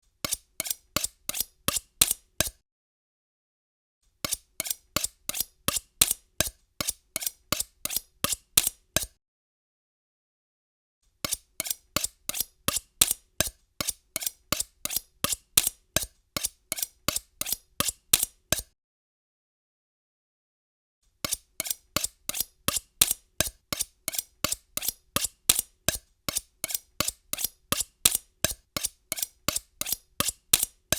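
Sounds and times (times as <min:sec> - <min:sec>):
knife being sharpened: 0:00.2 - 0:02.6, 0:04.2 - 0:09.2, 0:11.2 - 0:18.8, 0:21.2 - 0:30.9.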